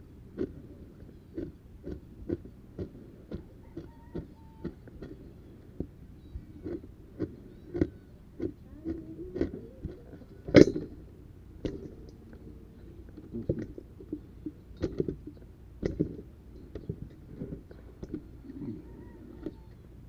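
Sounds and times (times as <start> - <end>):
low rumble: 4.9 - 20.0.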